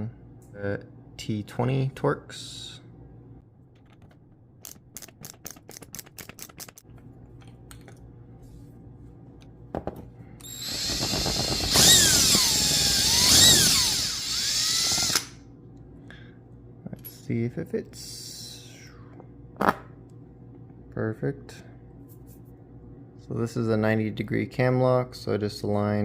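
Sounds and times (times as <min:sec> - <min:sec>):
power drill running: 0:10.4 - 0:15.4.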